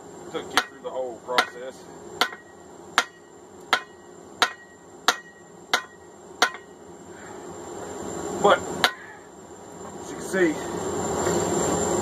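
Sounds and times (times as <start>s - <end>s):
hammer striking steel on anvil: 0.5s - 6.8s, 8.8s - 9.1s.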